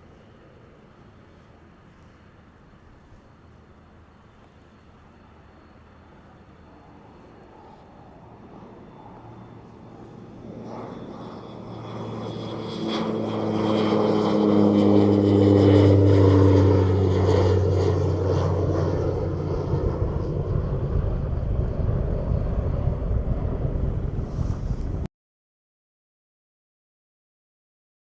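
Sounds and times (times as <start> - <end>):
propeller aircraft passing: 0.0 - 25.1
wind noise: 6.1 - 25.1.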